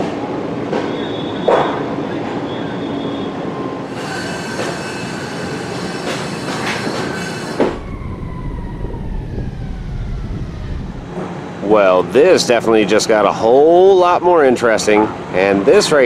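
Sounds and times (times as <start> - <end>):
falling machine whine: 3.8 - 12.5
high metallic squeal: 3.9 - 11.4
low machinery rumble: 7.5 - 13.2.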